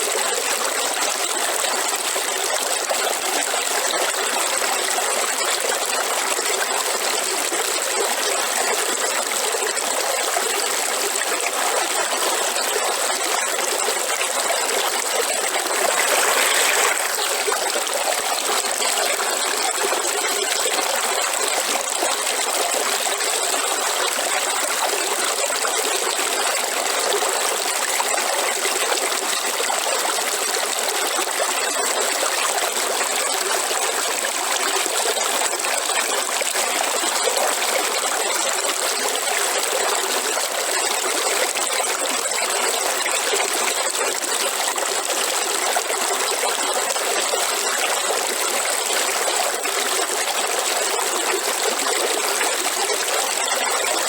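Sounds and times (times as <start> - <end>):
river flowing: 14.9 - 18.2.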